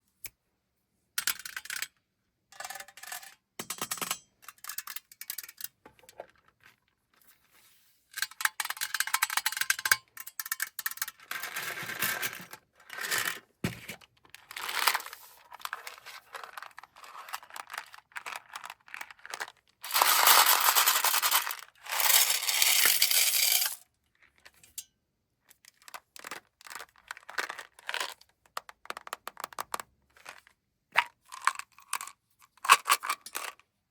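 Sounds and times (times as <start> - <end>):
candies clattering onto hard surface: 14.6 - 23.8.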